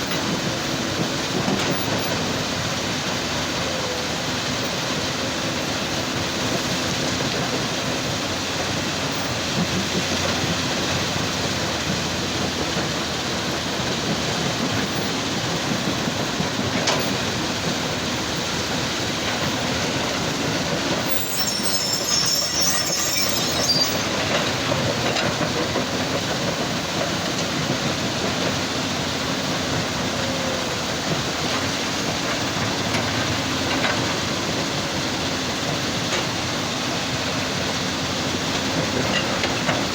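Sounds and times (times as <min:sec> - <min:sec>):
heavy machinery rumbling: 0:00.0 - 0:39.9
metallic squeal and scraping: 0:20.9 - 0:24.8.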